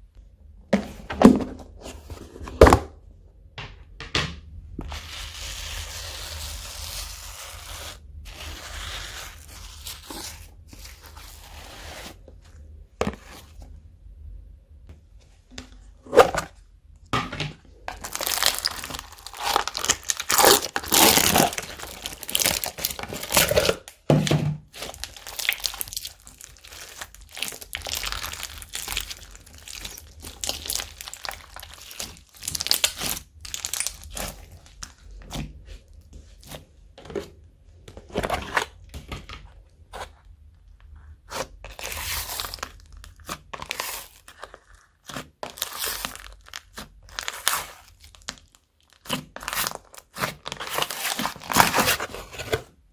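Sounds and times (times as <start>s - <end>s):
slime squished by hand: 18.0s - 23.7s, 24.7s - 35.4s.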